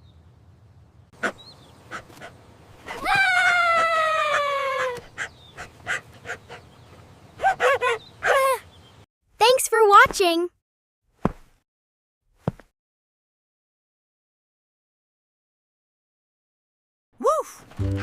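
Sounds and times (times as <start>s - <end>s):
cartoon animal call: 3.0s - 5.0s.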